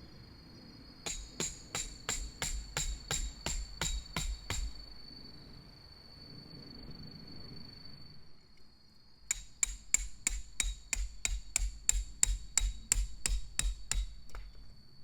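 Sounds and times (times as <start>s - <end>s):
hammer striking tent peg: 1.1s - 4.8s, 9.3s - 14.5s.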